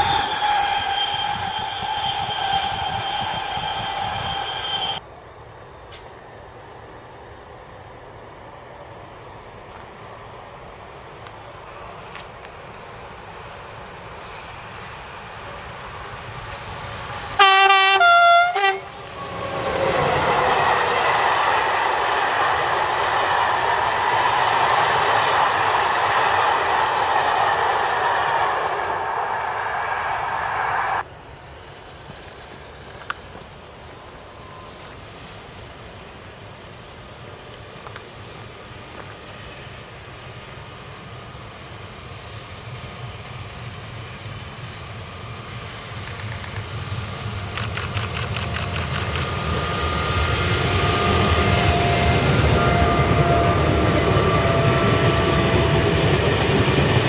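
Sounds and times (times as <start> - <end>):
two-tone locomotive horn: 0.0 - 5.0, 17.2 - 21.1, 50.5 - 56.8
passing train clattering: 0.0 - 57.0.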